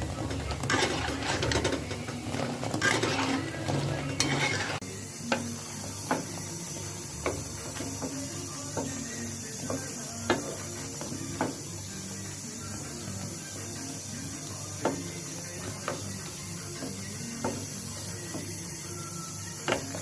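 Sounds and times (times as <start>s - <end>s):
oil sizzling: 0.0s - 20.0s
spatula scraping frying pan: 0.0s - 20.0s
utensil tapping against pan: 7.2s - 11.7s, 14.8s - 18.7s.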